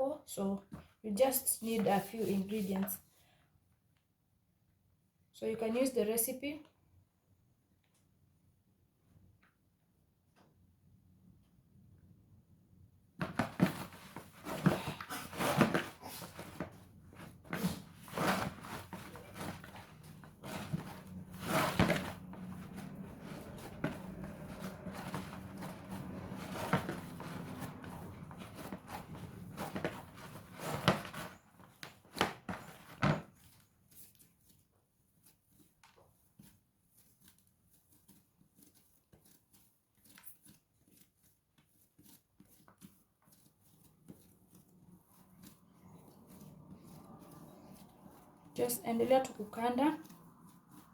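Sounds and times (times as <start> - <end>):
dough slaps and thumps: 13.2 - 33.4
dough squishing: 13.2 - 50.9.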